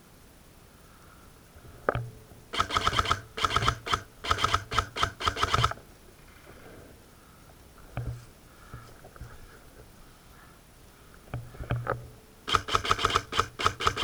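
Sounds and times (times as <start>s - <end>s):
airsoft gun full-auto bursts: 2.5s - 5.8s, 12.5s - 14.0s.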